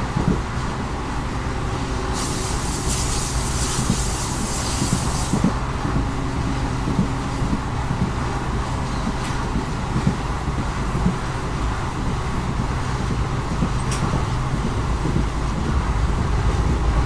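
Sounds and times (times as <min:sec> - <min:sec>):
diesel locomotive engine drone: 0:00.0 - 0:17.0
train rumble: 0:00.0 - 0:17.0
hiss: 0:02.1 - 0:05.6.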